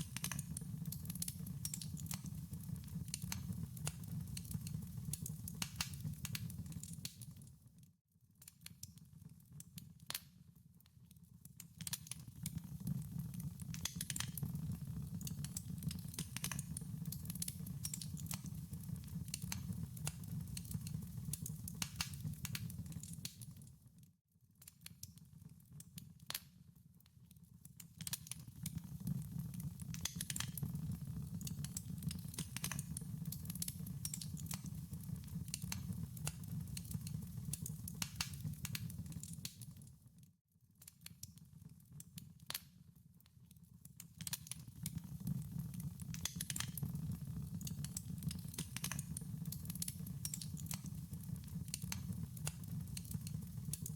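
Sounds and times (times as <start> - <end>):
wood fire crackling: 0.0 - 7.5, 11.8 - 23.7, 28.0 - 39.9, 44.2 - 53.9.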